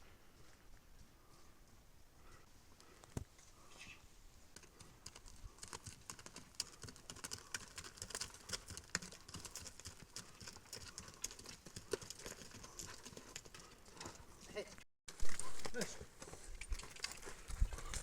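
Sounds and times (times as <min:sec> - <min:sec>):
footfalls on stony ground: 0:15.1 - 0:18.0.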